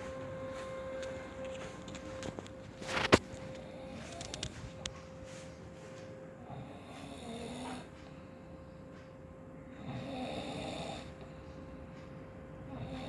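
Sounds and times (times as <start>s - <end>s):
faint steady hum: 0.0s - 13.0s
person snoring: 9.8s - 11.2s.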